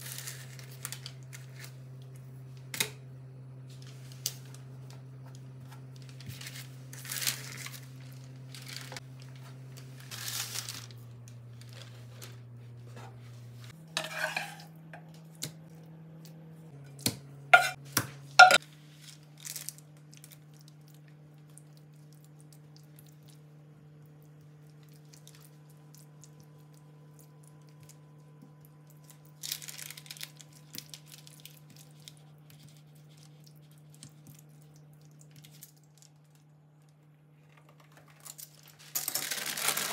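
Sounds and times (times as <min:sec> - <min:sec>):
dishes and utensils clinking: 0:14.0 - 0:14.7, 0:17.6 - 0:17.8, 0:18.4 - 0:18.6.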